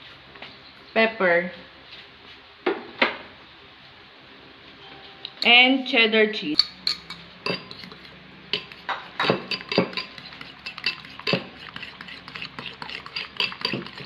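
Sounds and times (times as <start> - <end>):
utensil clinking against bowl: 6.6 - 14.0.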